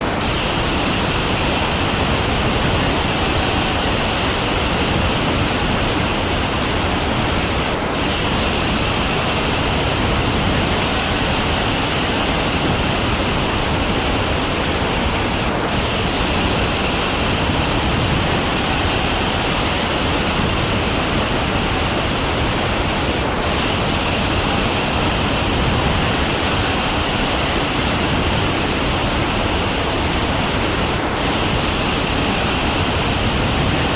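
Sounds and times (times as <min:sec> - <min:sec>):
waterfall rushing: 0:00.0 - 0:33.9.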